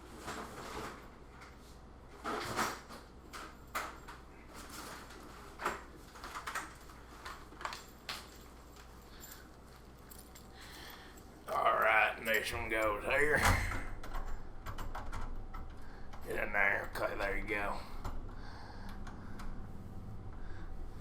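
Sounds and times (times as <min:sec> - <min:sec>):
computer parts clicking and knocking: 0:14.0 - 0:16.2.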